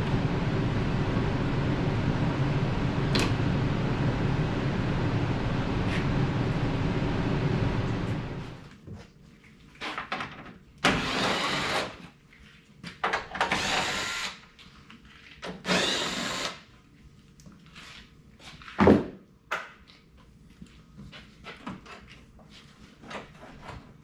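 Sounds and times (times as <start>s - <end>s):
power drill running: 10.9s - 12.0s, 13.4s - 14.4s, 15.6s - 16.6s.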